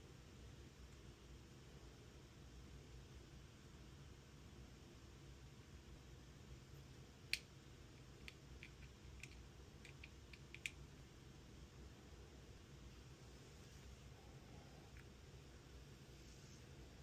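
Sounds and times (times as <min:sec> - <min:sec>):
small sharp clicks: 0:08.2 - 0:10.8.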